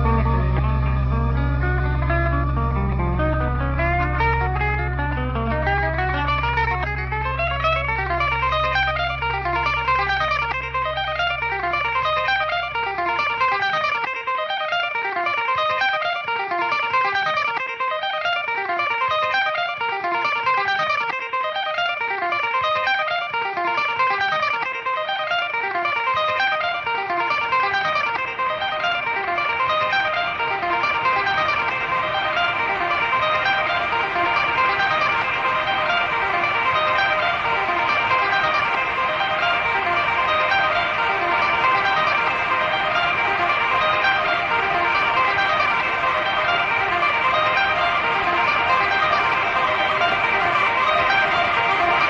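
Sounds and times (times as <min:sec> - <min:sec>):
held low bass note: 0:00.0 - 0:11.2
fast electric guitar figure: 0:00.0 - 0:52.0.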